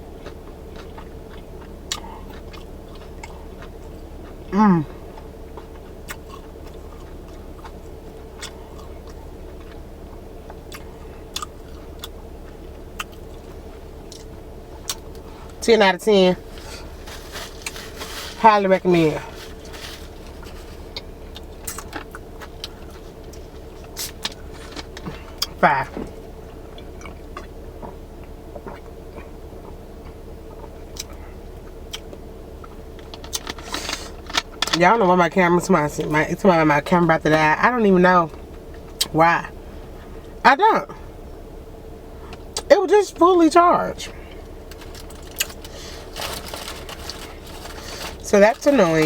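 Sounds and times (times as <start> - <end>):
person chewing food: 0.0 - 15.6, 19.2 - 34.7, 44.2 - 48.2
steady low hum: 0.0 - 49.0.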